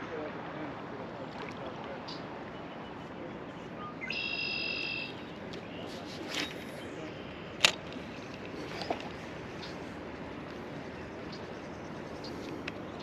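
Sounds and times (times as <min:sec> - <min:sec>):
bird buzzy high call: 0:03.8 - 0:05.4
river water hiss: 0:04.0 - 0:13.0.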